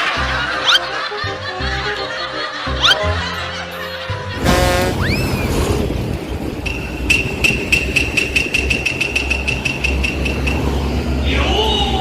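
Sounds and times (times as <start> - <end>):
heavy vehicle engine rumbling: 4.0 - 12.0.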